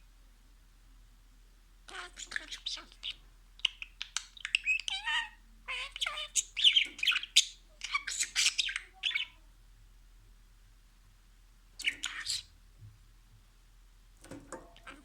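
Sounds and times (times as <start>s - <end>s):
budgerigar chattering: 1.9s - 9.4s, 11.8s - 12.5s.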